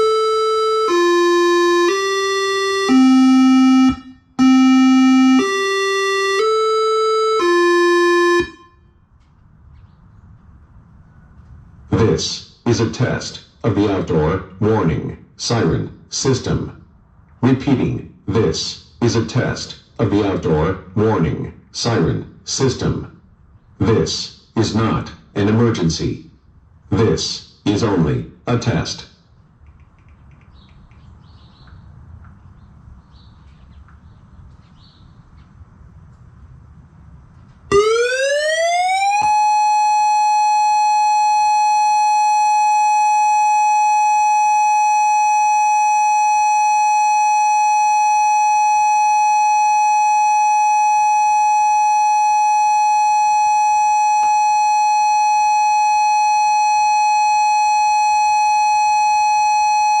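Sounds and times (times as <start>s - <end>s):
tornado warning siren: 0.0s - 9.2s, 37.0s - 60.0s.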